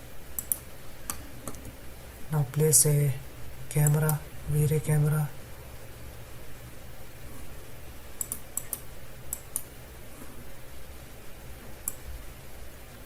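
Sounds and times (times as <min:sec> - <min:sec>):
faint low hum: 0:00.0 - 0:13.0
computer mouse clicks: 0:00.4 - 0:01.7, 0:08.2 - 0:09.7, 0:11.8 - 0:12.0.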